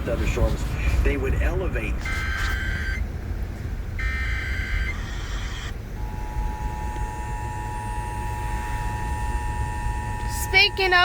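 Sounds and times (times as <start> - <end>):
car road rumble: 0.0 - 11.0
buzzy digital header tones: 2.0 - 3.0, 4.0 - 11.0.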